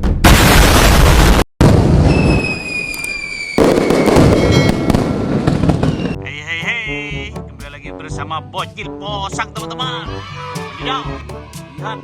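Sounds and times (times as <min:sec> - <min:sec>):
fireworks crackling: 0:01.7 - 0:06.2
falling whistle: 0:02.0 - 0:05.0
background music: 0:06.1 - 0:12.0.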